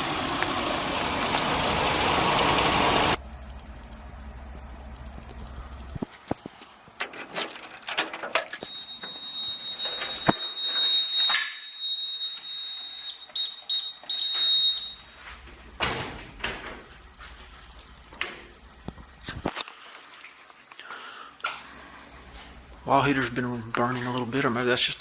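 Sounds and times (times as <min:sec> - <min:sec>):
high-pitched electronic beep: 0:08.7 - 0:15.0.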